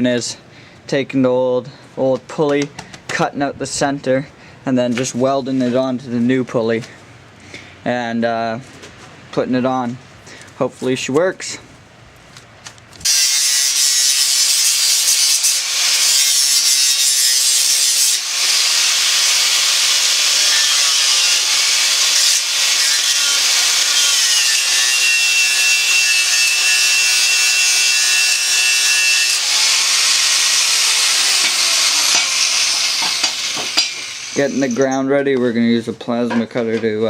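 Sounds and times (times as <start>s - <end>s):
power tool grinding metal: 13.0s - 34.8s.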